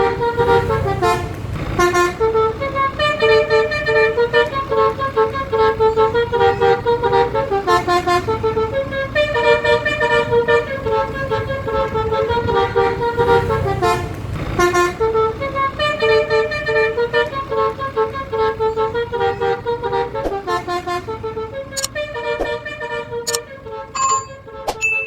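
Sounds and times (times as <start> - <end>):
low engine rumble: 0.0 - 24.6
multi-tone bus horn tune: 0.0 - 25.0
sharp clicks: 21.8 - 22.0.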